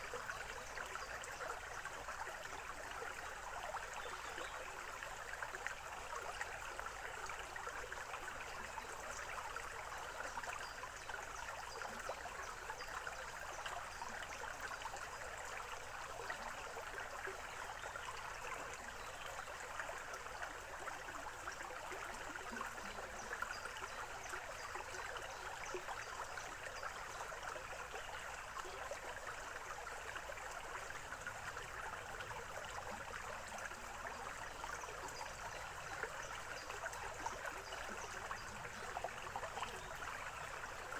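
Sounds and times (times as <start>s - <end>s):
stream babbling over stones: 0.0s - 40.9s.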